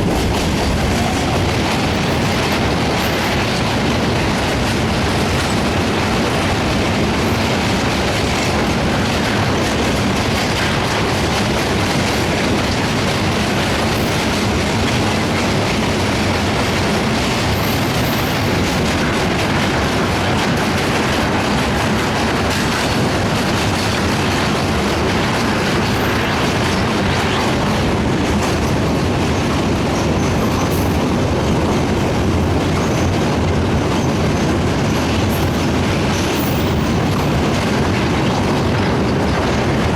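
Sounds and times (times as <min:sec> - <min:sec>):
train rumbling over bridge: 0:00.0 - 0:39.9
wheels clattering on rail joints: 0:00.0 - 0:39.9.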